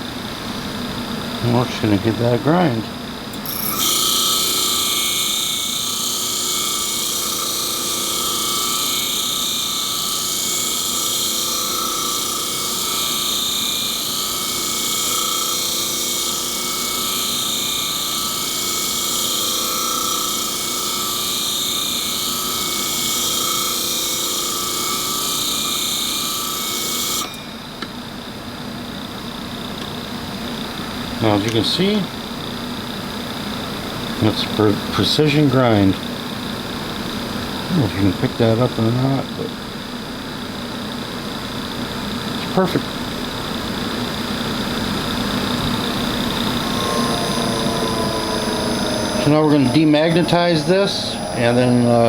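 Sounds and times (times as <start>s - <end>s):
high grinding hiss: 1.4s - 28.2s, 43.4s - 52.0s
motor hum: 43.4s - 52.0s.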